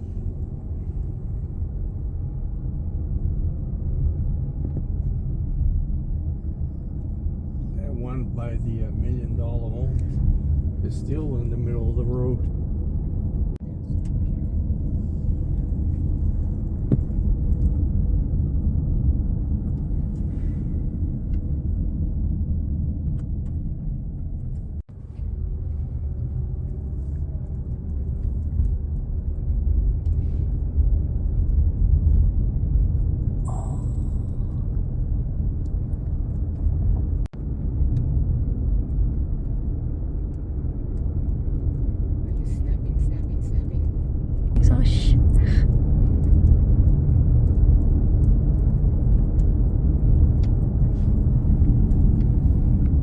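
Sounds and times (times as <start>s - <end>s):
strong wind buffeting microphone: 12.4s - 53.0s.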